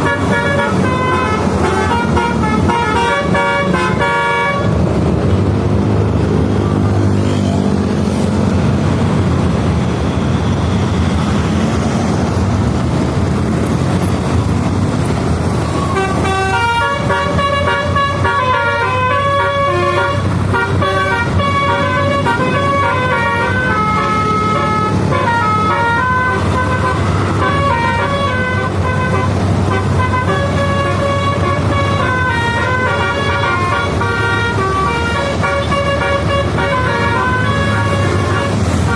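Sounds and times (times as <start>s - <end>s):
multi-tone air horn tune: 0.0s - 4.8s, 15.9s - 38.9s
bus engine rumbling: 0.0s - 38.9s.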